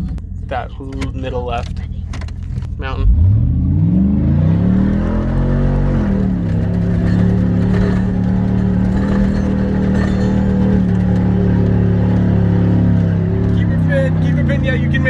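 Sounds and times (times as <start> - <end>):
engine revving at full throttle: 3.0 - 15.0.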